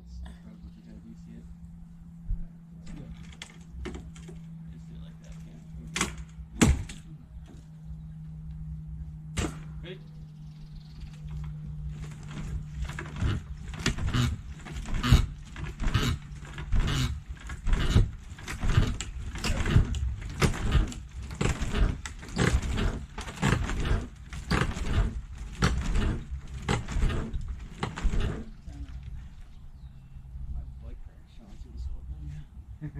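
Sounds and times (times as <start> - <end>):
wooden boards knocking and cracking: 6.0 - 7.0, 12.0 - 28.6.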